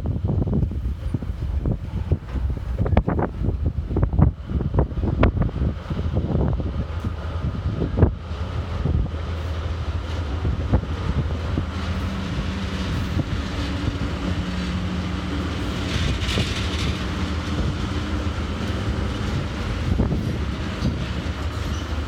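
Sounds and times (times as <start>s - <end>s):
diesel locomotive engine drone: 0.0s - 22.0s
wheels and couplings clicking: 11.9s - 22.0s.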